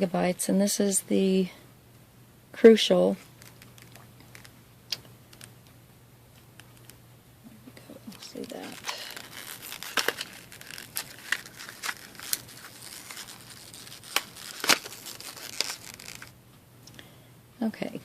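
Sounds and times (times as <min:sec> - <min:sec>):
plastic packaging crackling: 0:03.2 - 0:05.5, 0:07.8 - 0:16.4.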